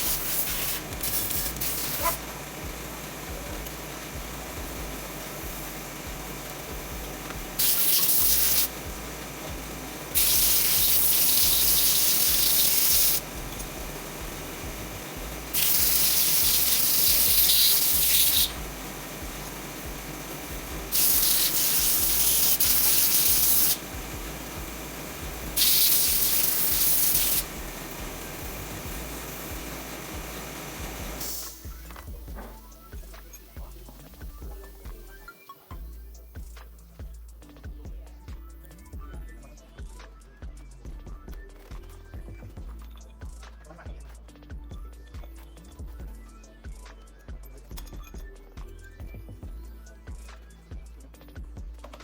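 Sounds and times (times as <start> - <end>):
spraying hiss: 0.0 - 34.8
steady low hum: 0.0 - 45.0.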